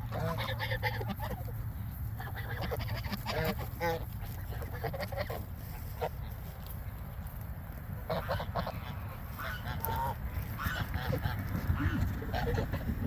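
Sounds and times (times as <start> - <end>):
geese honking: 0.0 - 6.4, 8.0 - 13.0.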